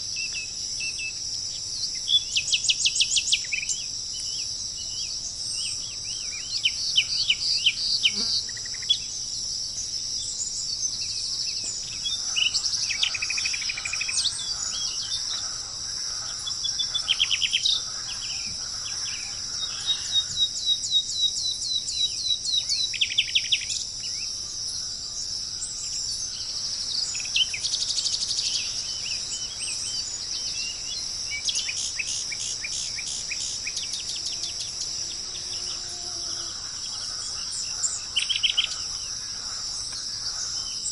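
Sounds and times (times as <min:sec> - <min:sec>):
birds chirping and trilling: 0:00.0 - 0:40.9
insects chorus: 0:00.0 - 0:40.9.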